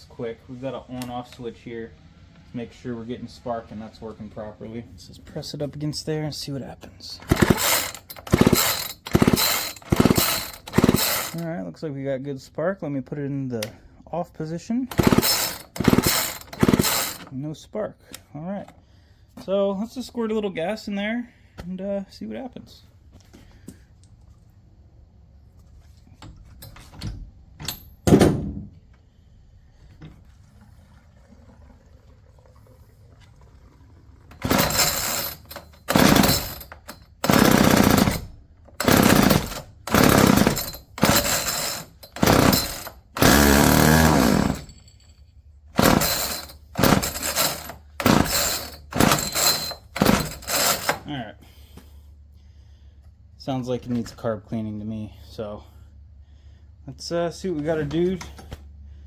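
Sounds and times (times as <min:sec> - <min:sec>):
recoil starter pulls: 0:07.2 - 0:11.4, 0:14.9 - 0:17.3, 0:34.3 - 0:44.8, 0:45.8 - 0:51.1.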